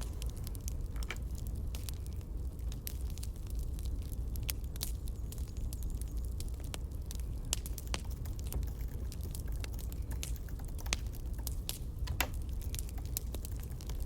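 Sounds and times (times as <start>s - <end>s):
campfire crackling: 0.0s - 14.0s.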